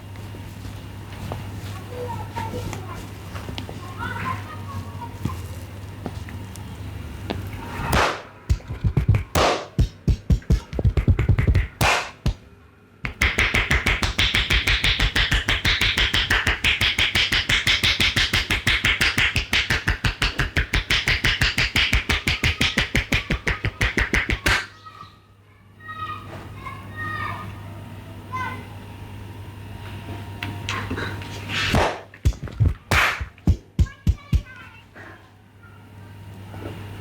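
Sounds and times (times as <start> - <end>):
hands slapping a head: 7.9 - 12.4, 13.0 - 24.7, 31.7 - 34.6.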